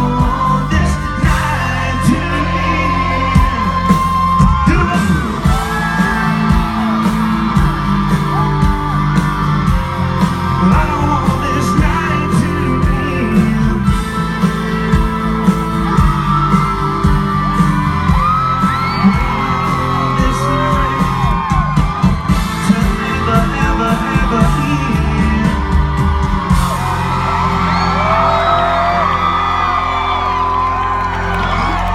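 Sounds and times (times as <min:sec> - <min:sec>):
crowd yelling and singing along: 0:00.0 - 0:31.9
live country band playing: 0:00.0 - 0:31.9
drum hits: 0:03.4 - 0:27.6.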